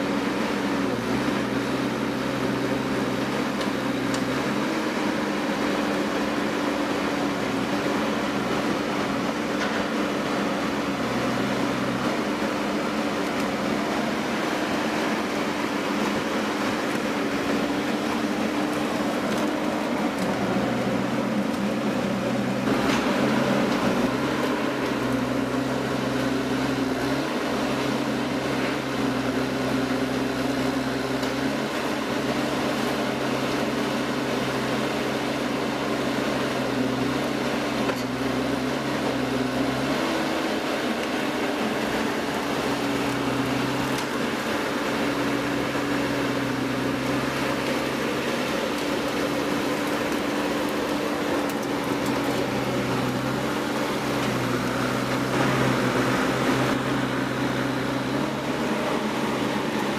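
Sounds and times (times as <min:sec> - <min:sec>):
machine humming: 0:38.1 - 0:59.9.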